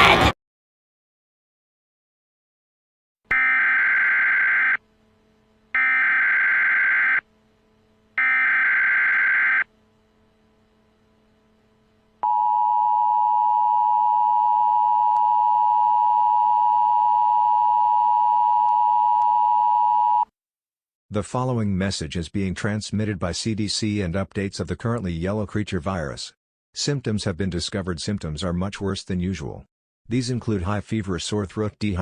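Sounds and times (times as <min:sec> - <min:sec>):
steady attention signal tone: 0:12.2 - 0:18.5.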